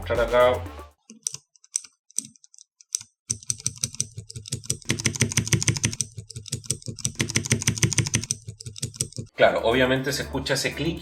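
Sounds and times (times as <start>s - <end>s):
key switches clicking: 1.1s - 9.3s.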